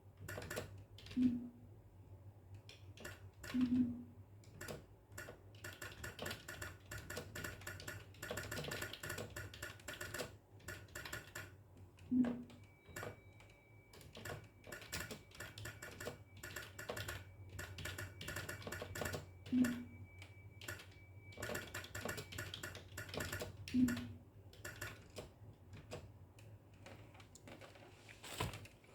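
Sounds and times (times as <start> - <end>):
fast typing on keyboard: 0.3 - 1.2, 4.6 - 11.6, 14.0 - 19.8, 20.6 - 26.0.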